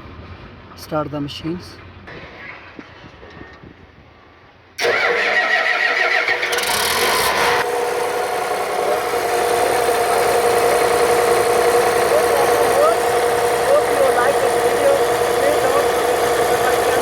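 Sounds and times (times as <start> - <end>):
diesel engine cranking and idling: 4.8 - 17.0.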